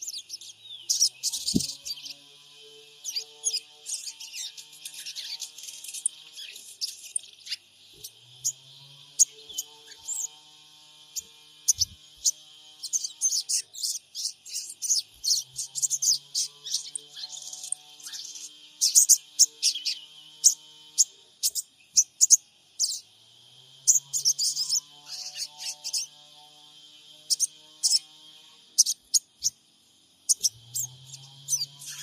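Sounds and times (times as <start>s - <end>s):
bird chirping and twittering: 0.0s - 23.2s, 23.8s - 26.5s, 27.2s - 29.6s, 30.2s - 32.0s.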